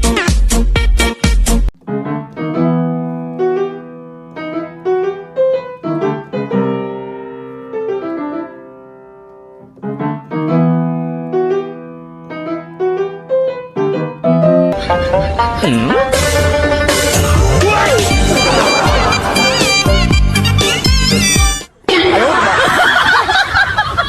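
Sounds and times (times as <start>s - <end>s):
solo piano music: 1.8s - 16.9s.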